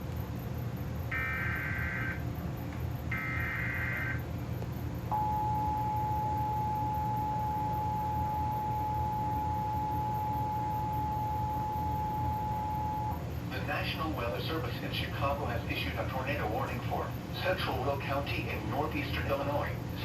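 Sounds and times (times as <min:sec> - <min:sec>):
data burst tones: 0:01.1 - 0:02.2.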